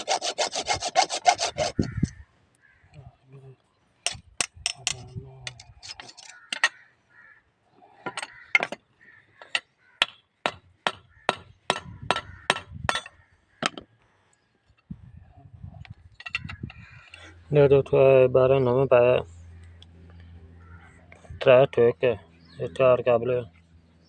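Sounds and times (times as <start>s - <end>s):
hammer striking metal: 10.0s - 13.1s.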